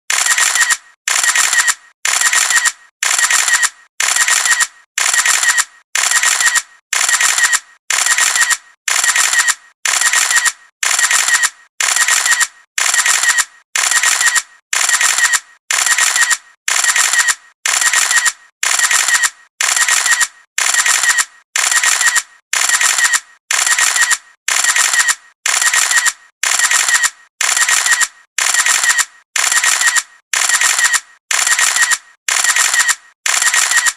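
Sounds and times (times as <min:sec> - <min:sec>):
camera shutter clicks: 0:00.1 - 0:33.9.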